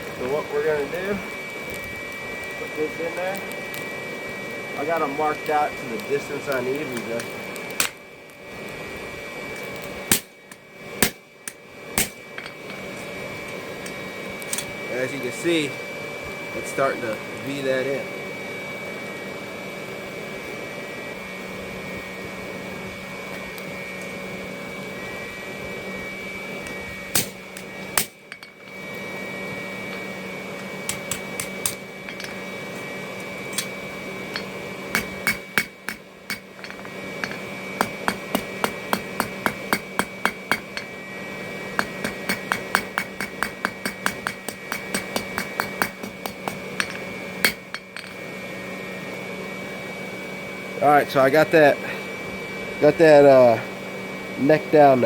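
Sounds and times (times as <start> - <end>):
steady mechanical hum: 0.0 - 55.0
hammer striking steel: 10.1 - 10.4, 11.0 - 11.2, 12.0 - 12.6, 27.2 - 28.8, 30.9 - 32.4, 34.3 - 40.9, 41.8 - 48.2.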